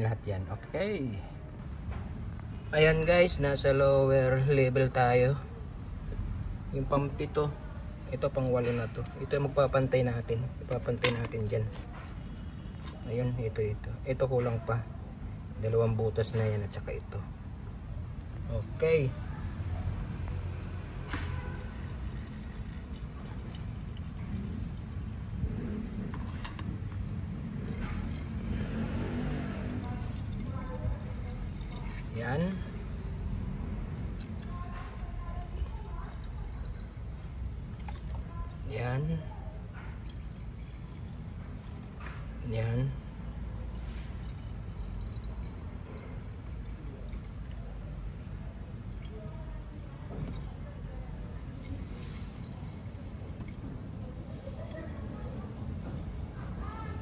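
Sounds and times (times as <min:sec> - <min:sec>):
liquid pouring from a bottle: 0:21.3 - 0:33.2, 0:33.9 - 0:38.8, 0:39.9 - 0:42.4, 0:43.5 - 0:47.7, 0:48.7 - 0:50.7, 0:51.4 - 0:56.4.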